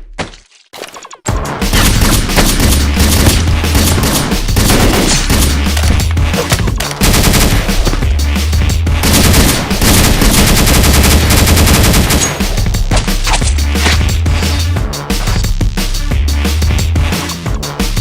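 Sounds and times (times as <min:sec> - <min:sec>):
music with deep bass: 0:01.3 - 0:18.0
automatic gunfire: 0:01.7 - 0:05.6, 0:07.0 - 0:07.9, 0:09.0 - 0:12.4.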